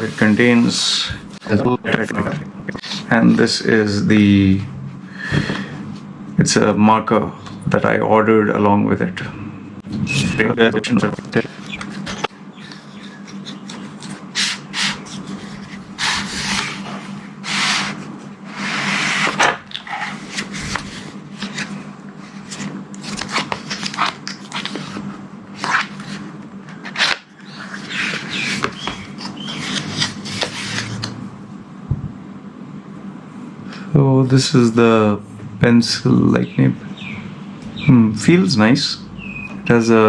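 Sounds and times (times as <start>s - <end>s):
packaging rubbing and scraping: 10.3s - 31.1s.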